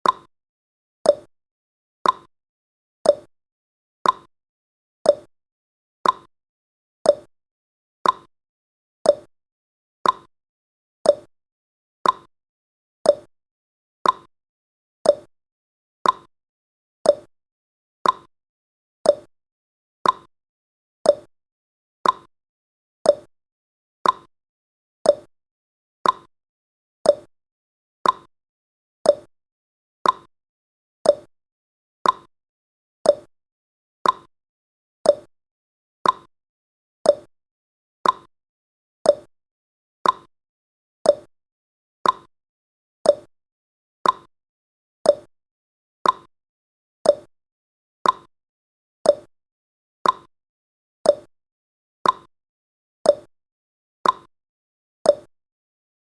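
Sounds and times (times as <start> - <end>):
timer ticking: 0.0 - 0.3, 1.1 - 1.3, 2.0 - 2.3, 3.1 - 3.3, 4.0 - 4.3, 5.1 - 5.3, 6.0 - 6.3, 7.1 - 7.3, 8.0 - 8.3, 9.1 - 9.3, 10.0 - 10.3, 11.1 - 11.3, 12.0 - 12.3, 13.1 - 13.3, 14.0 - 14.3, 15.0 - 15.3, 16.0 - 16.3, 17.1 - 17.3, 18.0 - 18.3, 19.1 - 19.3, 20.0 - 20.3, 21.1 - 21.3, 22.0 - 22.3, 23.1 - 23.3, 24.0 - 24.3, 25.1 - 25.3, 26.0 - 26.3, 27.1 - 27.3, 28.0 - 28.3, 29.1 - 29.3, 30.0 - 30.3, 31.0 - 31.3, 32.0 - 32.3, 33.0 - 33.3, 34.0 - 34.3, 35.1 - 35.3, 36.0 - 36.3, 37.1 - 37.3, 38.0 - 38.3, 39.1 - 39.3, 40.0 - 40.3, 41.0 - 41.3, 42.0 - 42.3, 43.1 - 43.3, 44.0 - 44.3, 45.1 - 45.3, 46.0 - 46.3, 47.0 - 47.3, 48.0 - 48.3, 49.1 - 49.3, 50.0 - 50.3, 51.1 - 51.3, 52.0 - 52.3, 53.1 - 53.3, 54.0 - 54.3, 55.1 - 55.3.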